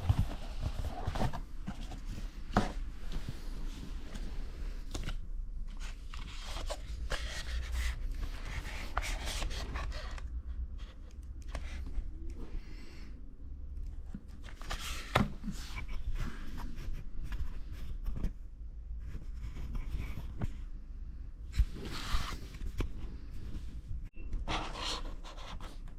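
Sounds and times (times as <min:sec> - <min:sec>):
packaging rustling and scraping: 0:00.0 - 0:10.3.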